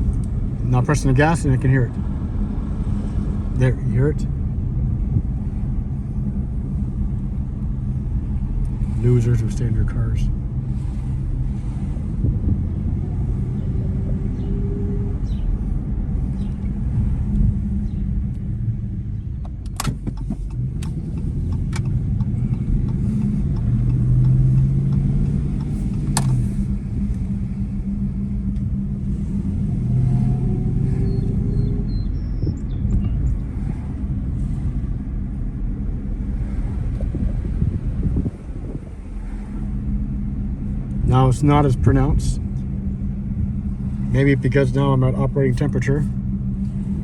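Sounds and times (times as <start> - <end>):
car engine rumble: 0.0 - 47.0
road noise inside car: 0.0 - 47.0
sharp clicks: 19.4 - 26.5.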